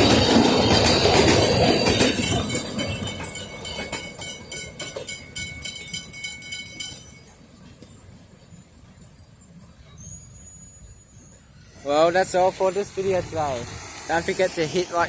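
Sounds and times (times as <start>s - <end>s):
train wheels clicking over rail joints: 0.0s - 8.3s
thin high wheel squeal: 9.8s - 15.0s.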